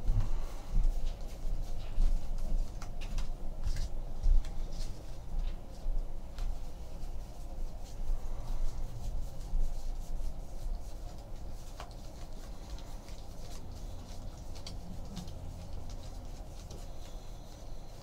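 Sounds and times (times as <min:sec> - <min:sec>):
steady low hum: 0:00.0 - 0:18.0
cards rubbing and ticking: 0:08.7 - 0:18.0.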